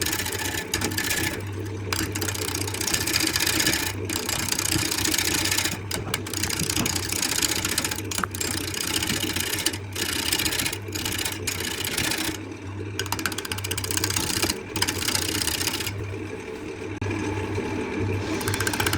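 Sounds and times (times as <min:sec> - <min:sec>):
rasping wood cutting: 0:02.0 - 0:09.6.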